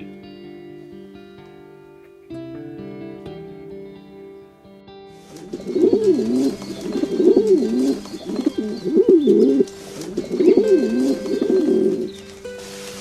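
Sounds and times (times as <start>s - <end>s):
bird cooing: 5.2s - 13.0s.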